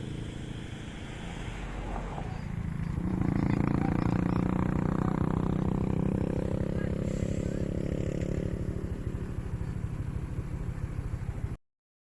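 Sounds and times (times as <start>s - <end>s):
vehicle engine pulsing hum: 0.0s - 11.6s.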